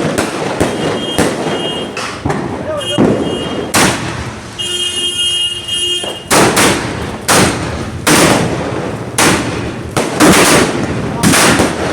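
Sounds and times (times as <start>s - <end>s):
loud firework bangs: 0.0s - 11.9s
firework whistle: 0.5s - 3.9s, 4.5s - 6.6s.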